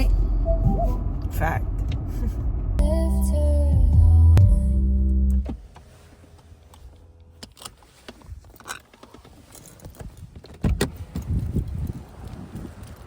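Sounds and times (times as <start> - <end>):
music: 0.5 - 1.0, 2.8 - 5.3
heavy thumps and rumbling: 3.7 - 5.6.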